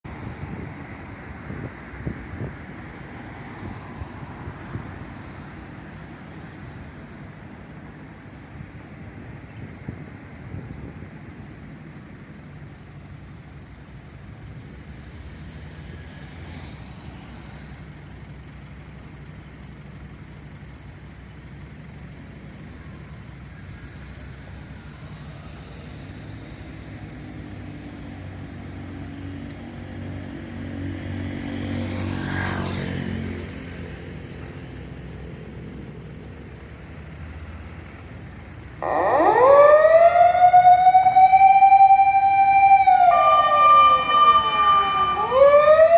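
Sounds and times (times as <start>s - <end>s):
street noise: 0.0s - 45.9s
vehicle passing: 30.1s - 34.2s, 38.8s - 45.9s
low engine rumble: 33.8s - 45.9s
fire truck siren wailing: 38.8s - 45.9s.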